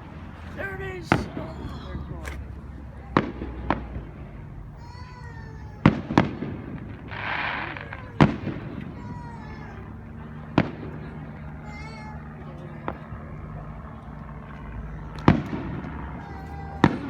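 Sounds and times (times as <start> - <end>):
distant fireworks booming: 0.0 - 4.8, 5.8 - 9.0, 9.8 - 11.3.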